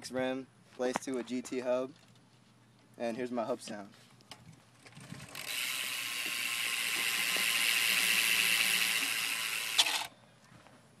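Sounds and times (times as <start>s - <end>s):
bicycle hub freewheeling whir: 4.8s - 10.1s.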